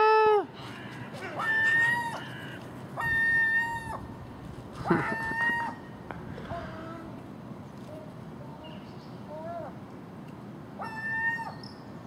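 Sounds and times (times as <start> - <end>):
gulls calling: 0.6 - 7.2.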